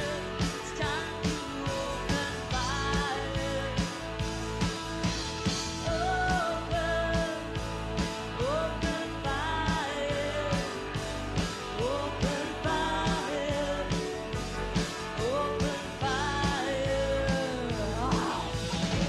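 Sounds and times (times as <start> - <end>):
country-rock song: 0.0 - 19.0.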